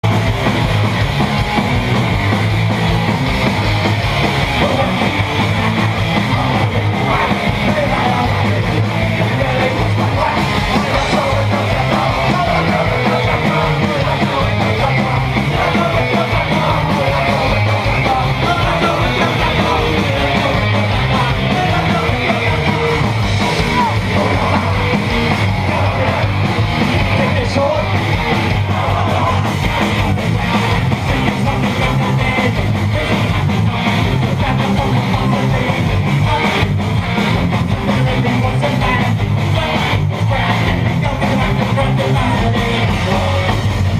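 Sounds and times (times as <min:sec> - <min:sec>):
punk rock music: 0:00.0 - 0:43.9
yelled vocals: 0:00.0 - 0:43.9.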